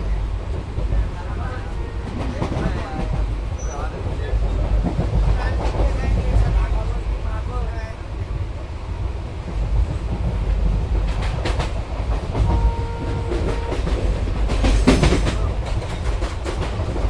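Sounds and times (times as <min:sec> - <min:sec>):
train rumble inside carriage: 0:00.0 - 0:17.0
wheels clacking over rail joints: 0:10.1 - 0:17.0.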